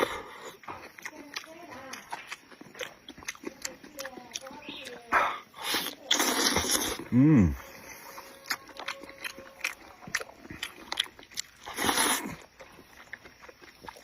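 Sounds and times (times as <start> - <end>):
slurping: 0.0 - 14.0
wet chewing and lip-smacking: 0.0 - 14.0
person humming: 7.1 - 7.6.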